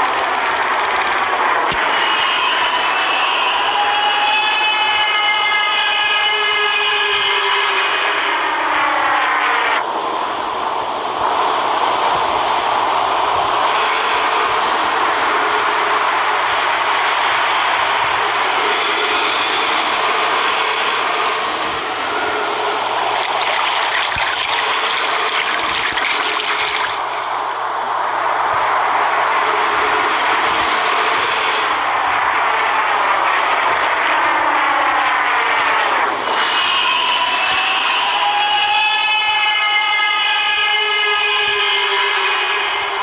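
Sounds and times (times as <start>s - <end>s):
sliding pitched cries: 0.0s - 9.8s, 18.3s - 27.7s, 30.4s - 43.0s.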